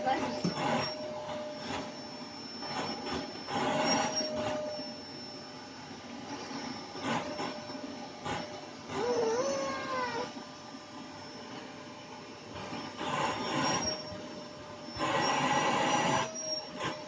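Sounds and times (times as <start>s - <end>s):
vacuum cleaner whining: 0.0s - 17.0s
wavering squeal: 0.4s - 5.6s, 6.5s - 10.3s, 12.7s - 17.0s.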